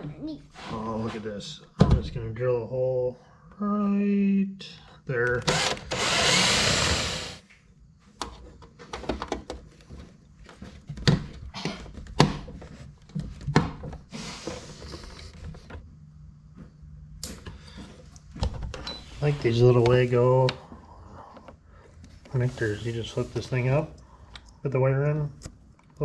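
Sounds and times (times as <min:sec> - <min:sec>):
power drill boring: 0:05.4 - 0:07.4.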